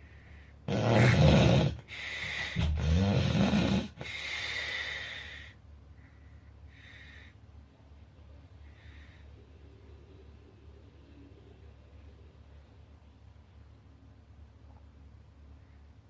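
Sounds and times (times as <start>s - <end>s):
person breathing: 0.0s - 0.7s, 1.8s - 2.9s, 3.8s - 7.5s, 8.6s - 9.6s
person snoring: 0.7s - 4.2s.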